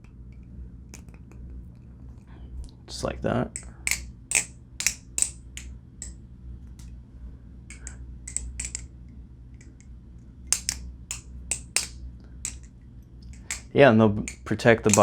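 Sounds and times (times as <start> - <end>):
butterfly knife clicking: 3.6 - 6.2, 7.7 - 8.9, 10.5 - 13.7, 14.3 - 15.0.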